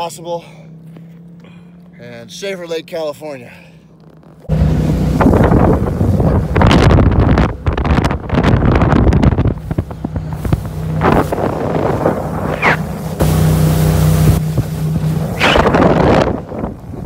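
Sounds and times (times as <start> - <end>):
motorboat engine running: 0.0 - 17.0
wind buffeting microphone: 4.5 - 17.0.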